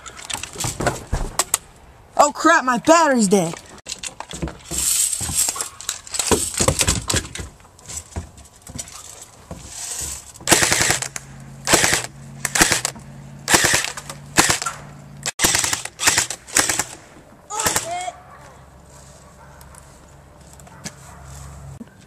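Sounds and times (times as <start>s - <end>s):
gunfire in short bursts: 10.5s - 12.9s, 13.5s - 14.7s, 15.4s - 18.1s.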